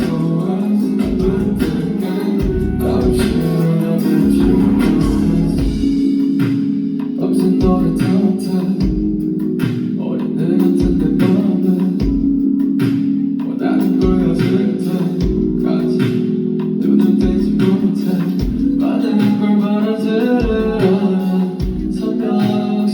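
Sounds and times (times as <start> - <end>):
live band music: 0.0 - 9.0.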